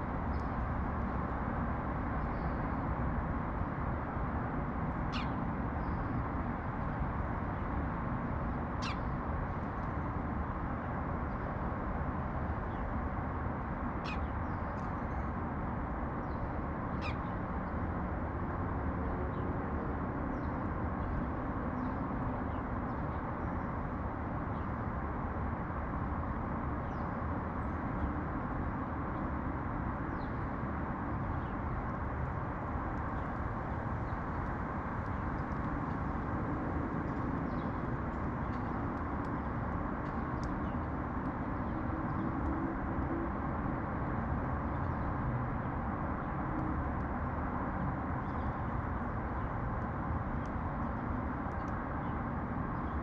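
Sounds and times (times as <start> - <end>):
city traffic rumble: 0.0 - 53.0
sparrows chirping: 8.8 - 9.1.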